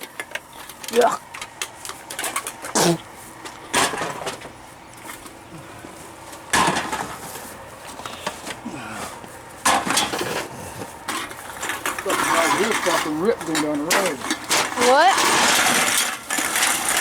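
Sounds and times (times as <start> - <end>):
scrap metal crashing down: 6.5 - 7.2, 9.7 - 10.5, 13.9 - 17.0.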